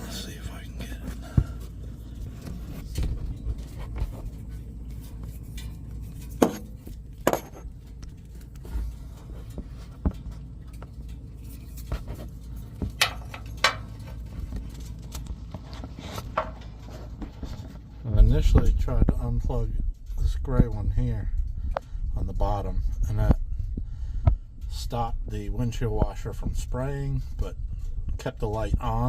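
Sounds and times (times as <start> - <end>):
low steady rumble: 0.0 - 29.0.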